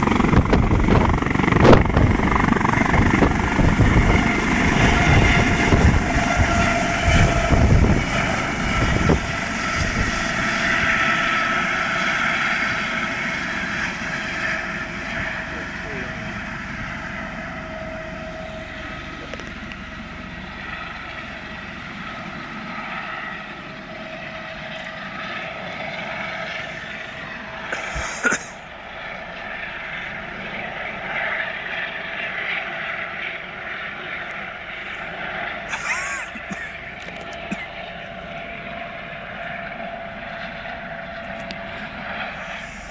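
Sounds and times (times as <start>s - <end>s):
helicopter engine and rotor: 0.0s - 42.9s
steady whine: 0.0s - 42.9s.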